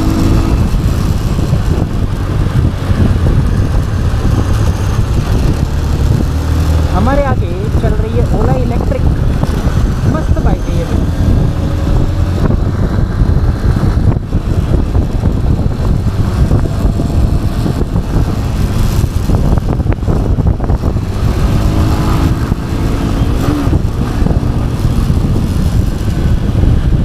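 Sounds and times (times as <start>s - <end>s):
motorcycle engine rumbling: 0.0s - 27.0s.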